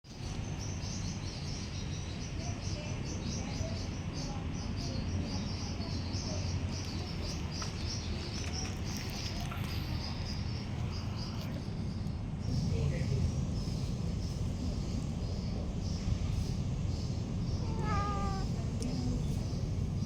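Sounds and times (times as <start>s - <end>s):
insects chirping: 0.1s - 20.0s
steady low rumble: 10.1s - 20.0s.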